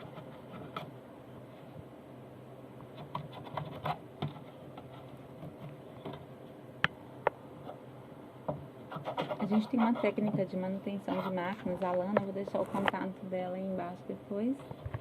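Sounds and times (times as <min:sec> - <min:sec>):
hands scratching and clicking on machine: 0:03.0 - 0:06.2.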